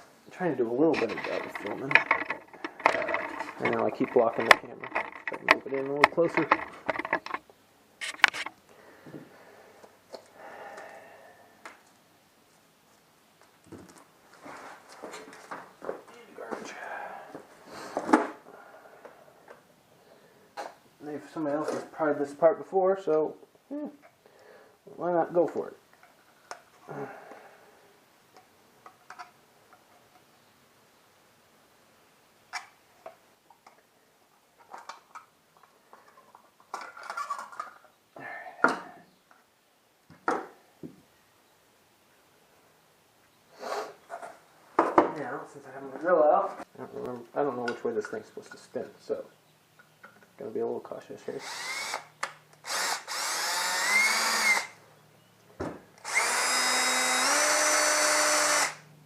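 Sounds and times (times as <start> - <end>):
hand tools handled: 0.8 - 7.4, 8.0 - 8.5
power drill whine: 51.4 - 54.8, 56.0 - 58.8.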